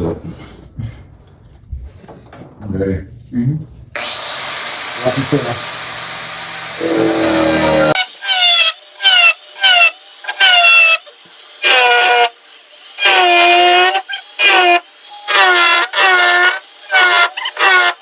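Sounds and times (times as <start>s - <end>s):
rotary tool screeching on metal: 6.8s - 18.0s.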